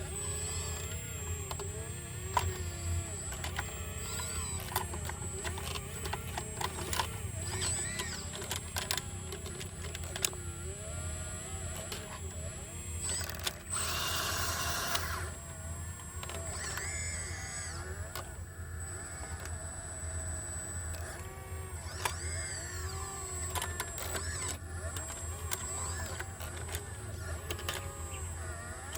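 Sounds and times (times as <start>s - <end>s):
hydraulic whines: 0.0s - 28.9s.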